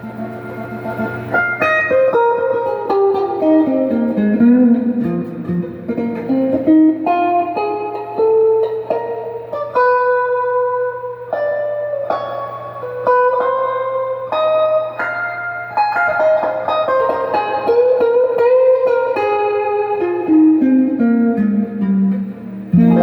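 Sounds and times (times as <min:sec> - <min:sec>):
electric guitar through an amp: 0:00.0 - 0:23.0.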